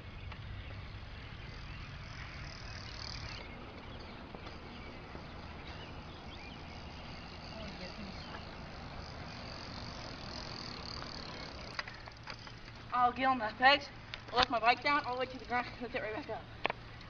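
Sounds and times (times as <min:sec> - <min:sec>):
insects trilling: 0:01.2 - 0:13.2.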